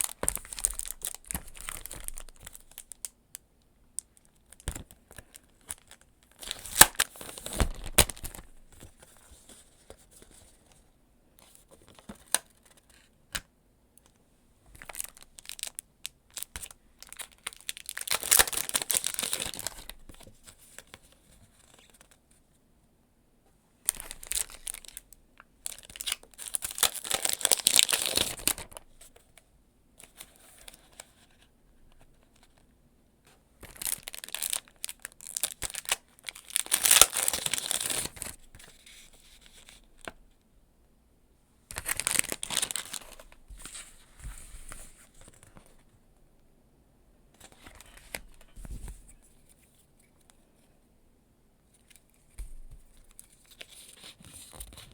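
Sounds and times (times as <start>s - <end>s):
packaging crinkling and tearing: 0.0s - 3.2s, 4.0s - 8.9s, 14.8s - 20.3s, 23.9s - 29.0s, 33.6s - 40.1s, 41.7s - 43.8s.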